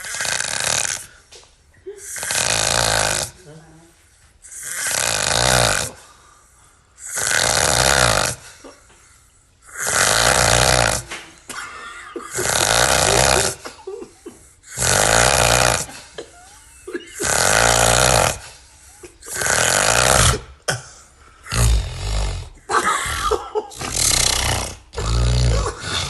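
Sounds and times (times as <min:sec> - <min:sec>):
person snoring loudly: 0:00.0 - 0:01.2, 0:02.0 - 0:03.4, 0:04.4 - 0:06.2, 0:07.0 - 0:08.6, 0:09.6 - 0:11.2, 0:12.3 - 0:13.8, 0:14.6 - 0:16.2, 0:17.1 - 0:20.6, 0:21.4 - 0:26.0
quiet breathing: 0:03.3 - 0:04.8, 0:05.9 - 0:07.1.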